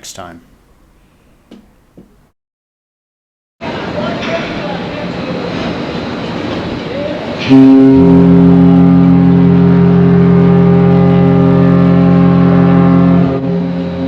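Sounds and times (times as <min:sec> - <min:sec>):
background noise: 0:00.0 - 0:02.3
deep ship horn blast: 0:07.4 - 0:14.0.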